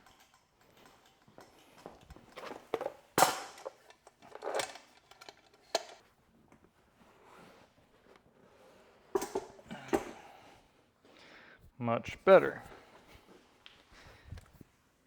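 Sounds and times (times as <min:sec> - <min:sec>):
knocks and clatters of hard objects: 0:00.0 - 0:06.0.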